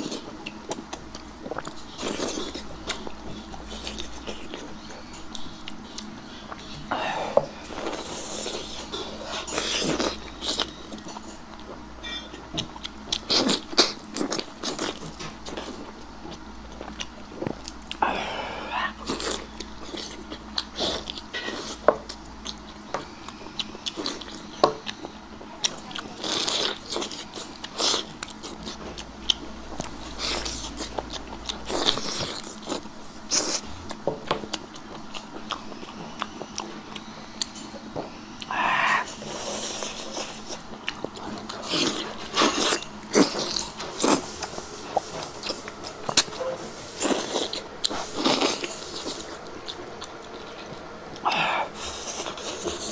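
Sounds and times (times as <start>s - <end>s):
wet biting and chewing: 38.4s - 52.9s.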